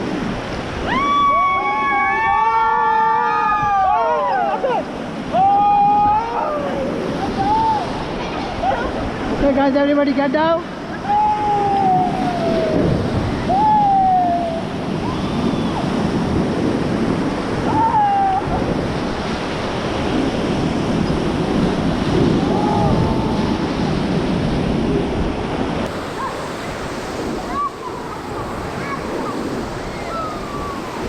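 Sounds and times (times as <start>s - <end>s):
whitewater rushing: 0.0s - 31.0s.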